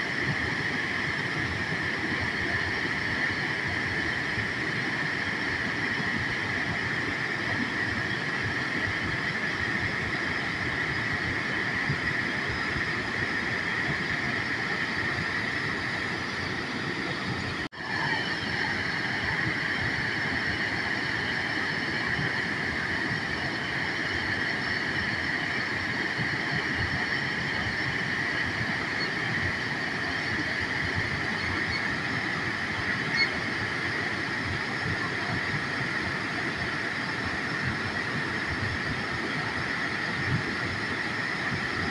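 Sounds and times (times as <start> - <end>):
waterfall rushing: 16.1 - 35.4.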